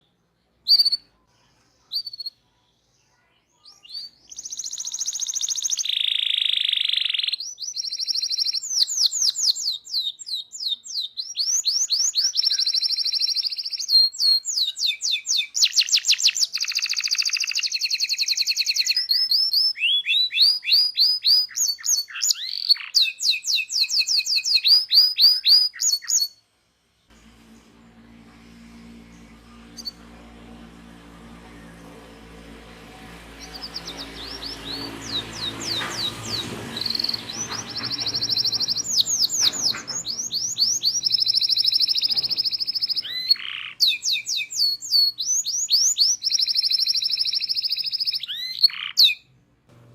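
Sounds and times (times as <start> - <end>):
canary singing trills: 0.0 - 26.4, 27.8 - 49.3
faint low hum: 26.5 - 43.4, 49.3 - 49.9.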